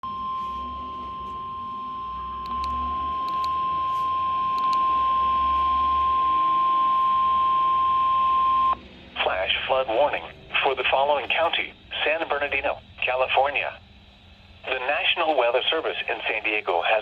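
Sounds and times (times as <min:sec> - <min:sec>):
steady alarm tone: 0:00.0 - 0:15.9
radio static hiss: 0:05.4 - 0:17.0.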